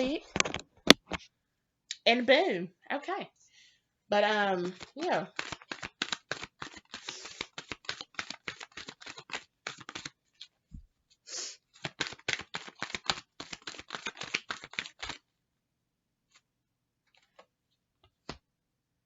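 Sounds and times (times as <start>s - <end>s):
cards being shuffled: 4.2s - 10.6s, 11.7s - 15.3s, 16.3s - 18.4s.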